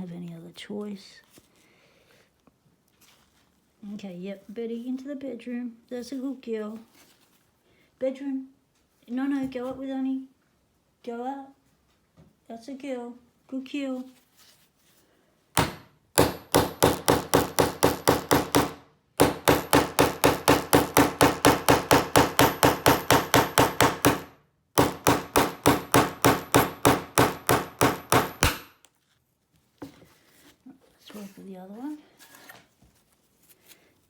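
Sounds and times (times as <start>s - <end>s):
rapid hammer taps: 15.6s - 28.8s.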